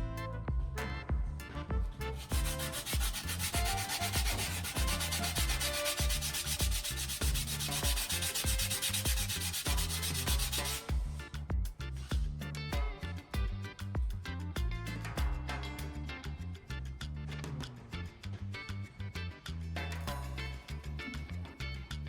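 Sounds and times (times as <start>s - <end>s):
background music with bass beat: 0.0s - 22.0s
grinder sanding: 2.2s - 10.9s.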